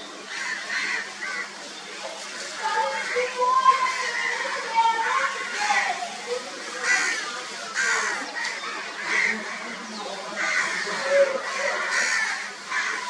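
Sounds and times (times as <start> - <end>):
crows cawing: 0.2 - 1.6, 6.7 - 13.0.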